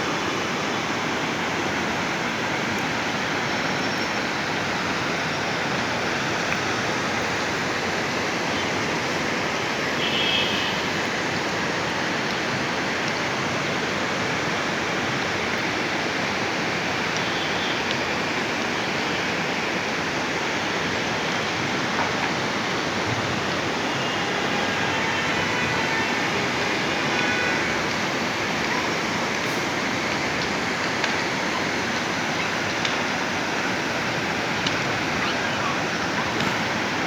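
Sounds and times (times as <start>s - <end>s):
river rushing: 17.8s - 37.0s.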